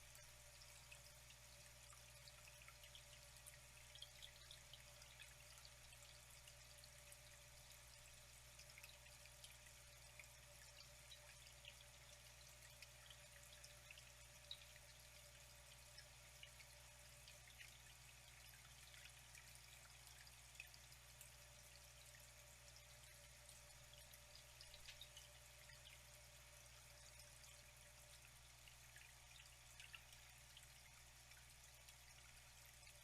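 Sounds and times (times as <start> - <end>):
trickle of flowing water: 0.0 - 33.0
water drips plinking: 15.7 - 33.0.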